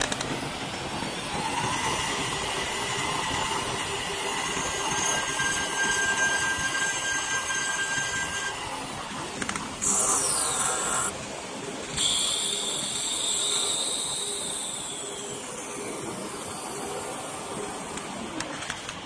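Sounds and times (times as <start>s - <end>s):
thin high whistle: 4.2s - 8.6s, 12.0s - 17.6s.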